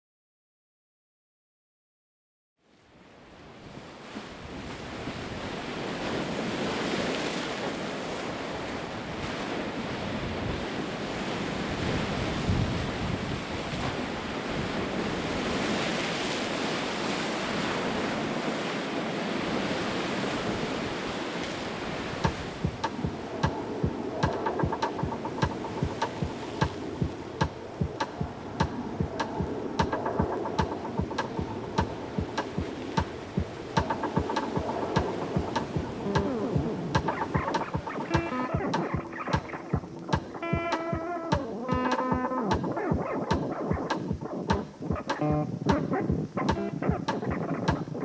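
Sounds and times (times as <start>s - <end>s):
sea surf washing: 3.4s - 48.0s
regular ticking beat: 22.3s - 48.0s.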